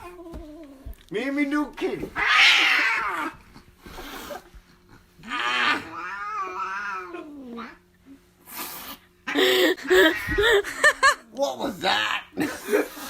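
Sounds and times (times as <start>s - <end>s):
cat yowling: 2.2s - 3.4s, 5.2s - 7.8s.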